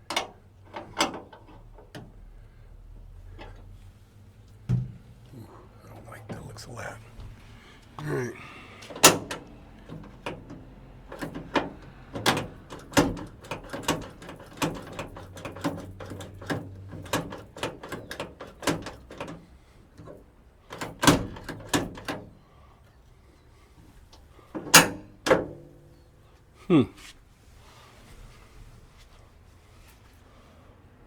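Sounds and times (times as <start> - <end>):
metal door latch clicking: 8.8 - 19.4, 20.7 - 22.3, 24.6 - 25.6.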